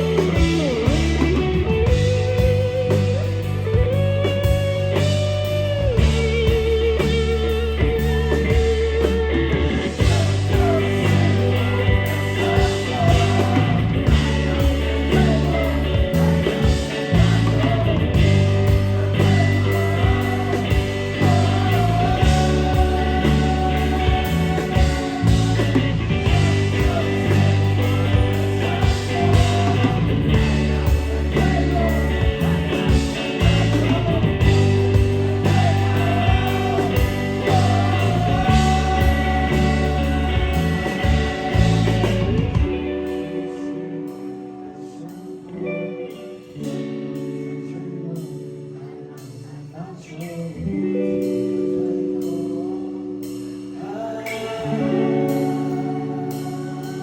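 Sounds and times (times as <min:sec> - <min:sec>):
heavy bass line: 0:00.0 - 0:43.8
electric guitars: 0:00.0 - 0:57.0
person singing: 0:06.0 - 0:57.0.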